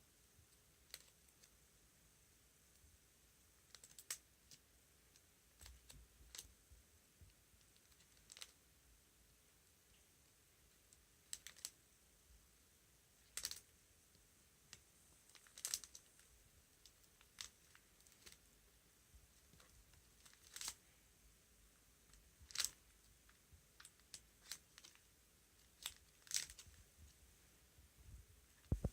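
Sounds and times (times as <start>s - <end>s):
plastic sleeves crinkling: 15.3s - 16.2s, 16.8s - 18.4s, 19.5s - 20.8s, 22.4s - 22.9s, 23.8s - 26.8s.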